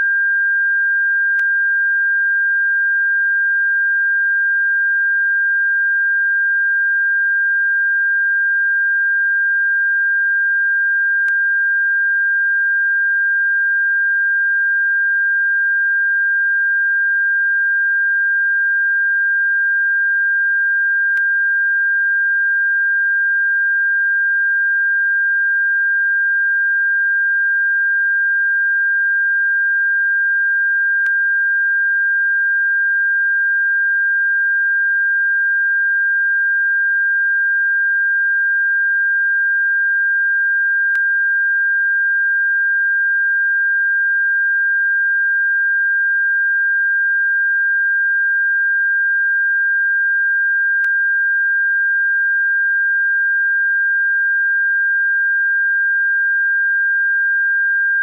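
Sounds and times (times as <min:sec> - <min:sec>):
faint click: 0:21.1 - 0:21.3, 0:50.8 - 0:51.0.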